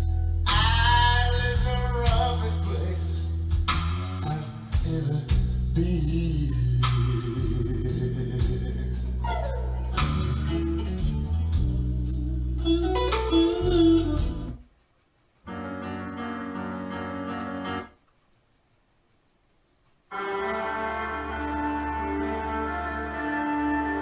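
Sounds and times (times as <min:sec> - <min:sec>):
band music with heavy bass: 0:00.0 - 0:14.6.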